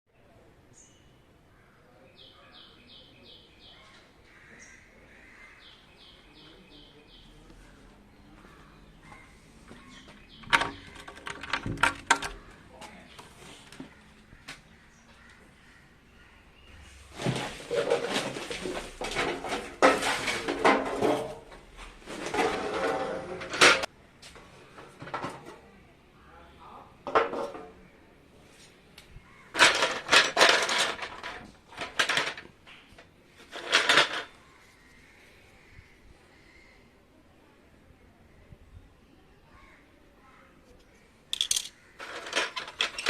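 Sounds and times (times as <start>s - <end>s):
hard objects clattering and scraping: 9.1s - 14.1s, 16.7s - 23.9s, 29.4s - 34.6s, 41.3s - 43.0s.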